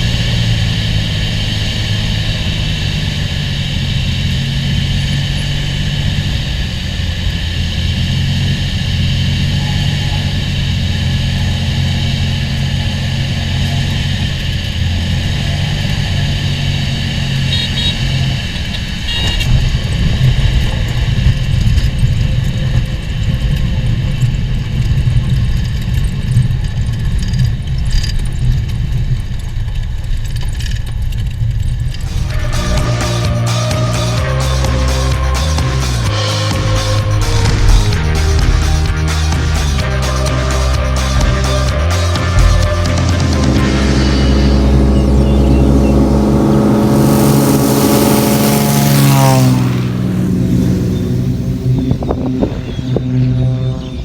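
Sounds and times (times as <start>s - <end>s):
propeller plane engine droning: 32.0s - 54.0s.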